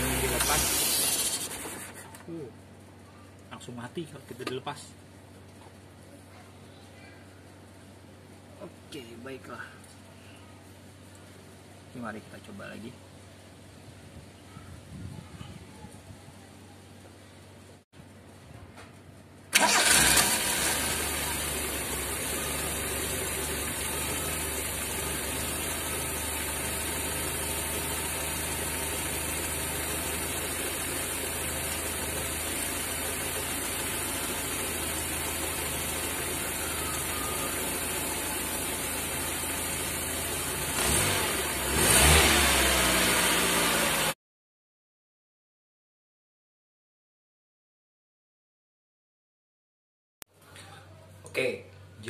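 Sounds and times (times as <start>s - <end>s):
engine revving: 0.0s - 1.6s, 19.6s - 29.4s, 40.0s - 44.2s
car engine starting and idling: 0.0s - 2.1s, 19.5s - 44.2s.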